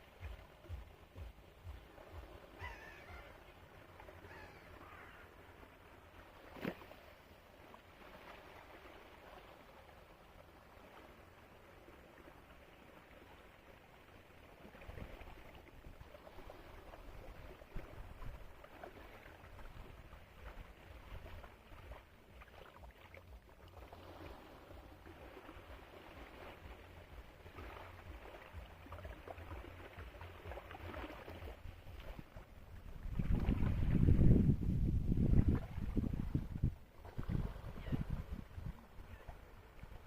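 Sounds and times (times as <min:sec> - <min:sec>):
sea water lapping: 0:00.0 - 0:40.0
wind rumbling on microphone: 0:14.6 - 0:40.0.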